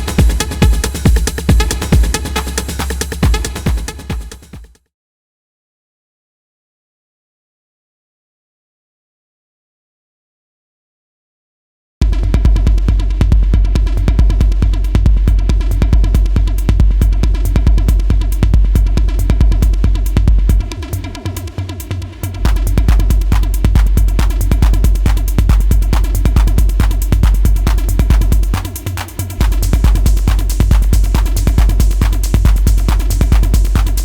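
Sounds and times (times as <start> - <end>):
industrial techno drum beat: 0.0 - 4.8, 12.0 - 34.0.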